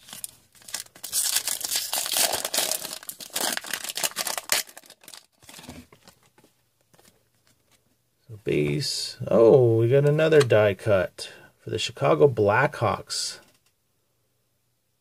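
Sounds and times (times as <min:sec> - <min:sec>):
foil wrapper tearing and crinkling: 0:00.0 - 0:05.8
cards rustling: 0:00.0 - 0:07.8.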